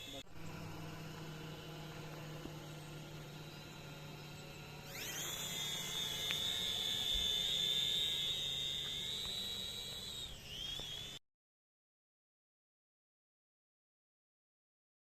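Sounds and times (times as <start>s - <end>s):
drone propellers whining: 0.0s - 11.2s.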